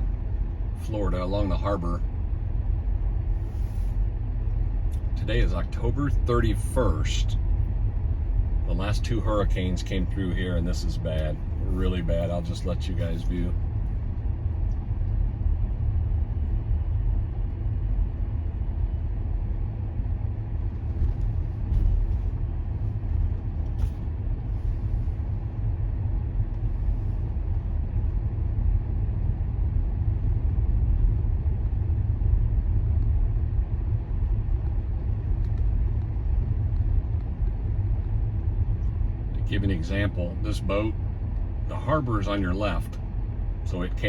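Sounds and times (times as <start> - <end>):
road and tyre noise inside car: 0.0 - 44.0.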